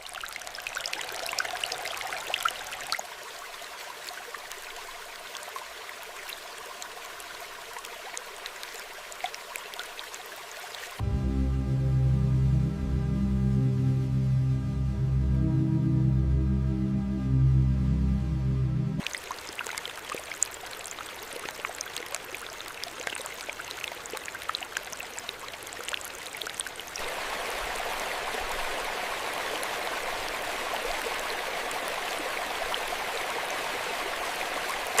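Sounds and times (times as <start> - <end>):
rush of falling water: 0.0 - 11.0, 19.0 - 35.0
water splashes: 0.0 - 11.0, 19.0 - 35.0
water trickling and dripping: 0.0 - 11.0, 19.0 - 35.0
background music: 11.0 - 19.0.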